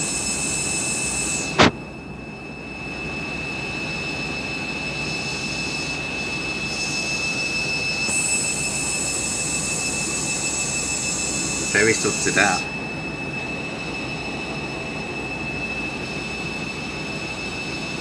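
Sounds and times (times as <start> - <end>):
high motor whine: 0.0 - 18.0.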